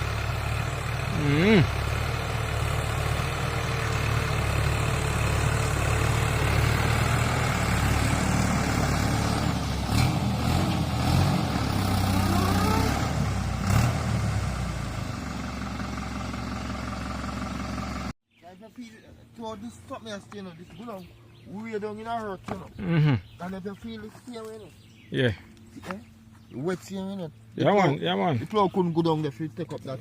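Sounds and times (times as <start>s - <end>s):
tractor engine running: 0.0s - 18.2s.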